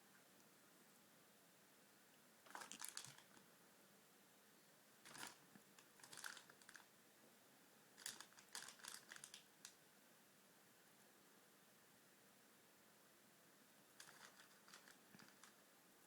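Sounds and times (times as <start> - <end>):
faint scratchy crackling: 14.0 - 15.6.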